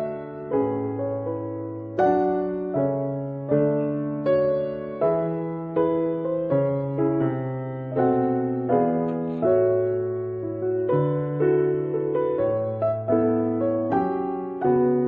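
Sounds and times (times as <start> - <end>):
gentle slow piano tune: 0.0 - 15.0.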